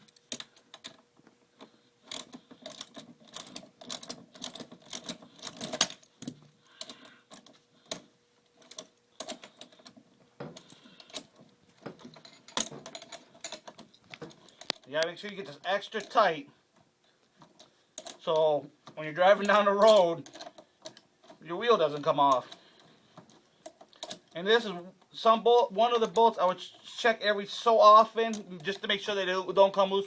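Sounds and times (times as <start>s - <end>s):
hand tools clicking on metal bolt: 1.6s - 8.0s, 17.4s - 25.2s, 28.2s - 29.0s.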